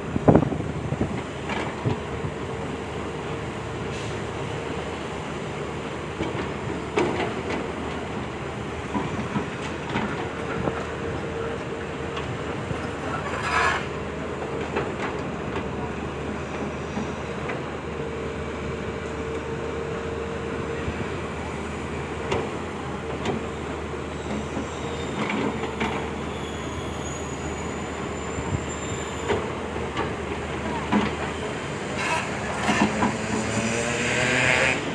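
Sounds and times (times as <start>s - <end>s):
excavator diesel engine whine: 0.0s - 34.9s
faint high squeal: 24.2s - 25.2s, 26.2s - 29.3s.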